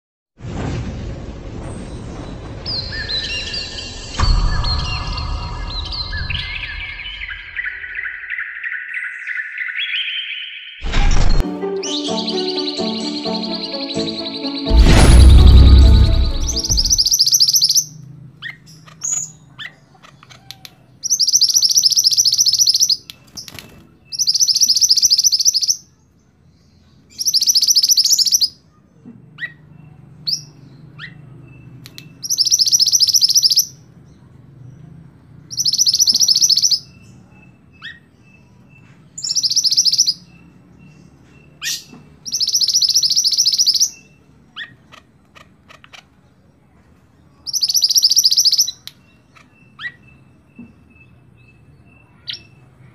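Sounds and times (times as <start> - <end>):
faint bird chirps: 2.7 - 10.9
bird singing trilled phrases: 2.8 - 10.9, 16.7 - 17.9, 21.0 - 23.5, 24.1 - 25.8, 32.0 - 33.7, 35.5 - 38.5, 39.2 - 41.0, 41.6 - 44.8, 47.5 - 50.3.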